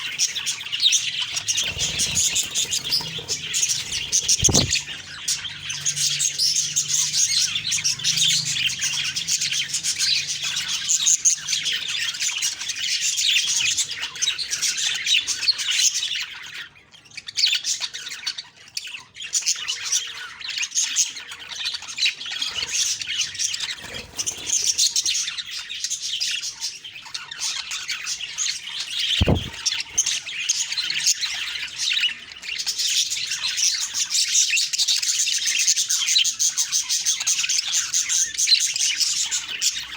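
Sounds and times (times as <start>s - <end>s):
budgerigars chattering: 0.0s - 11.1s, 29.0s - 29.7s
low thump: 29.2s - 29.6s.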